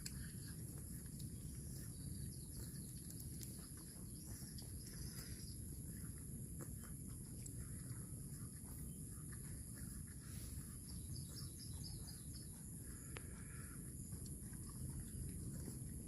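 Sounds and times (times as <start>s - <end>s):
faint bird chirps: 0.0s - 5.9s, 8.8s - 14.2s.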